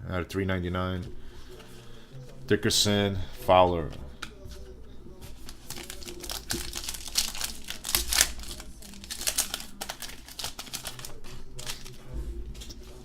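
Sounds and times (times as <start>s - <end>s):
wrapper crinkling and tearing: 5.4s - 12.0s.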